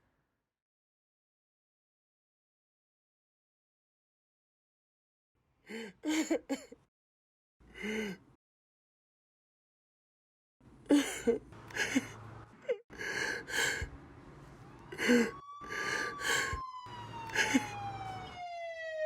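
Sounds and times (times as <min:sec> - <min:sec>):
breathy gasps: 0:07.7 - 0:08.3, 0:12.9 - 0:14.0, 0:15.0 - 0:16.6, 0:17.3 - 0:17.7
siren wailing: 0:14.6 - 0:19.0.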